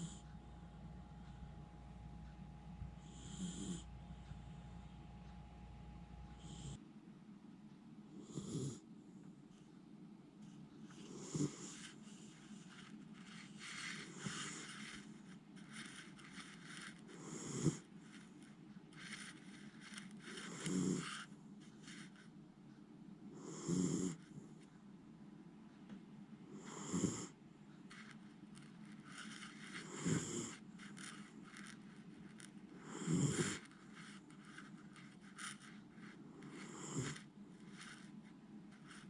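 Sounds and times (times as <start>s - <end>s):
dog snoring: 0.0s - 0.4s, 2.3s - 6.8s, 8.2s - 8.8s, 10.9s - 15.1s, 15.7s - 18.3s, 19.0s - 22.2s, 23.4s - 24.4s, 26.5s - 27.4s, 29.1s - 31.7s, 32.3s - 38.1s.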